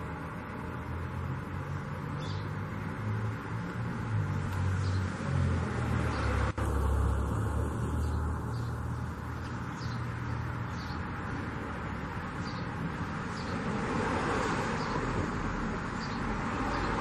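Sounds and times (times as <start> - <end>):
low traffic rumble: 0.0 - 17.0
small bird chirping: 2.0 - 2.6, 7.8 - 11.1.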